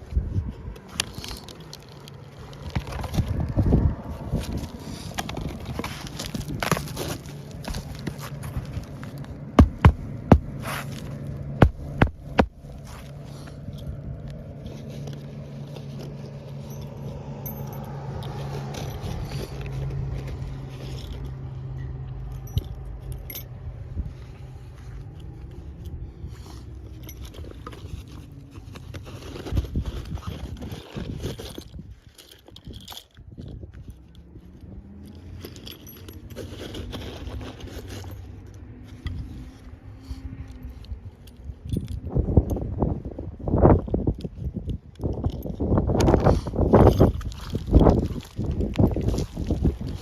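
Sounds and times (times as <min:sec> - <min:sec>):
passing vehicle hum: 0:00.0 - 0:29.1, 0:33.6 - 0:44.6
scraping and handling clicks: 0:00.0 - 0:50.0
hand tools knocking on shingle: 0:09.6 - 0:10.5.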